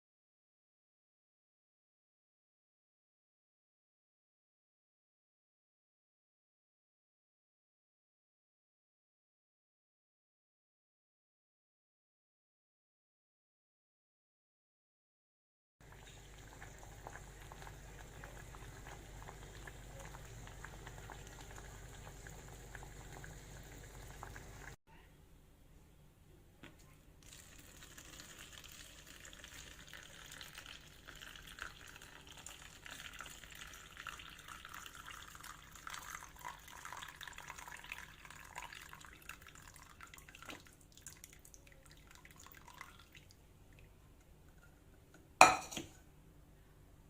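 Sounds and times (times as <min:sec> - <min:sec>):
liquid bubbling in a pot: 0:15.8 - 0:24.8, 0:27.2 - 0:45.9.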